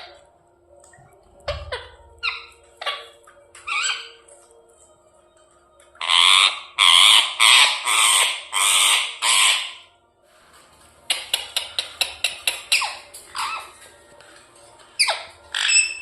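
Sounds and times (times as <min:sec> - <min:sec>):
parrot squawking: 0:01.4 - 0:04.3, 0:06.0 - 0:09.9, 0:11.1 - 0:13.9, 0:15.0 - 0:16.0.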